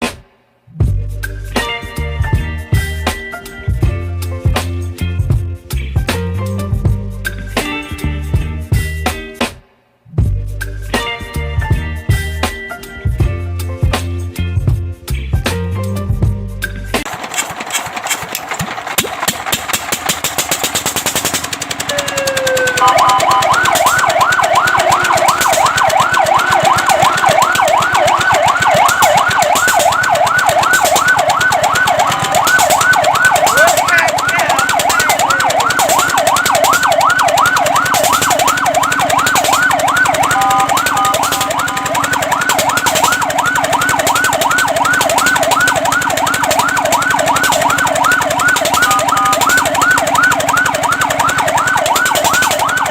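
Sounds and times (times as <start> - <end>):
fast even pulsing sound: 17.0 - 52.9
fire truck siren yelp: 21.2 - 52.9.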